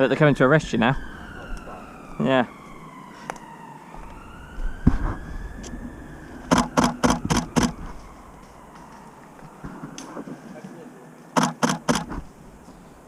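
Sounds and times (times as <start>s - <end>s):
siren wailing: 0.0s - 12.6s
sharp clicks: 6.5s - 7.8s, 11.4s - 12.2s.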